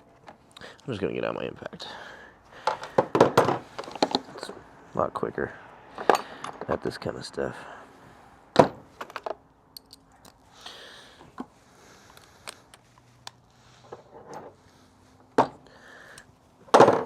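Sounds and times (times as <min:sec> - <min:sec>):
metallic tool clicks and knocks: 0:09.1 - 0:10.4.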